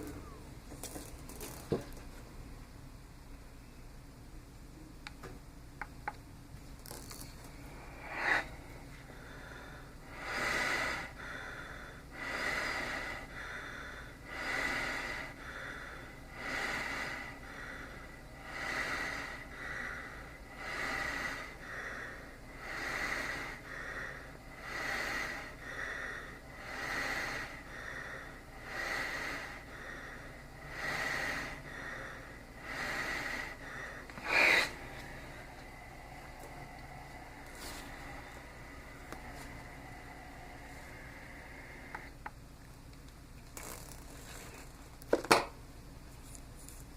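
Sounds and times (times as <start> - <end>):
cpap machine air hiss: 7.5 - 42.4.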